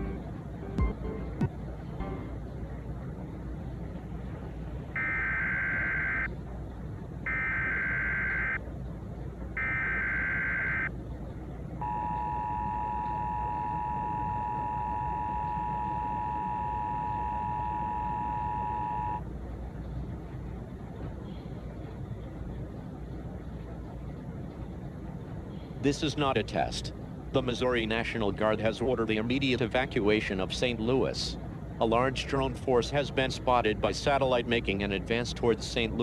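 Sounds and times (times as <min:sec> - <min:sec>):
low background rumble: 0:00.0 - 0:36.0
two-tone attention signal: 0:11.8 - 0:19.2.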